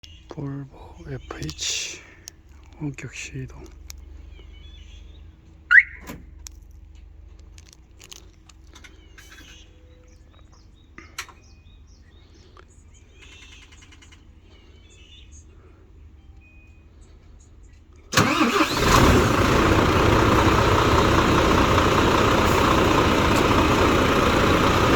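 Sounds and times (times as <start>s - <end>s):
truck engine cranking: 4.9s - 9.6s, 18.1s - 24.9s
alarm chirp rising in pitch: 5.7s - 6.1s.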